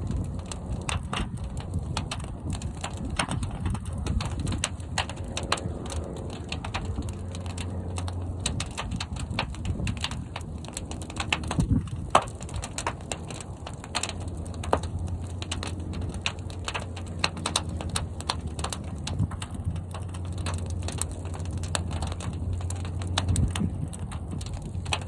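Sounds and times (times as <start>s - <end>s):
fire crackling and popping: 0.0s - 25.0s
low rumble of kiln fire: 0.0s - 25.0s.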